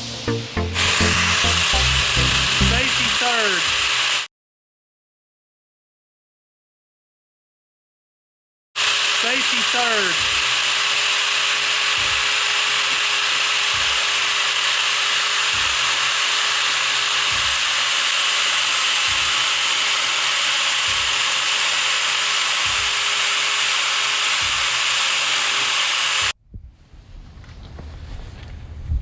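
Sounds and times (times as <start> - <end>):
power tool whirring: 0.0 - 4.3, 8.8 - 26.4.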